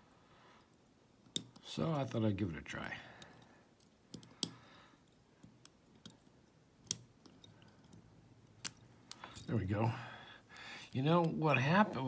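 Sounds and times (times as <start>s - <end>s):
lock picking metallic clicks: 0.6s - 2.2s, 3.2s - 9.5s.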